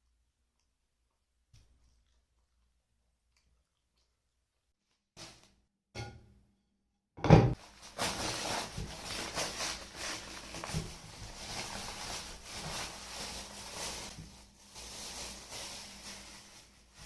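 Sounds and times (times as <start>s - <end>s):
chewing with crackles: 0.0s - 4.4s.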